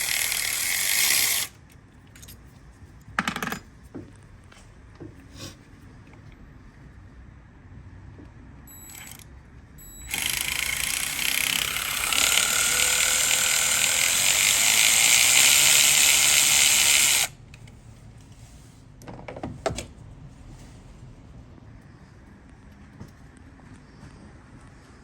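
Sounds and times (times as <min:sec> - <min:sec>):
ratchet wrench working: 0:00.0 - 0:01.5, 0:08.7 - 0:09.2, 0:09.8 - 0:17.3.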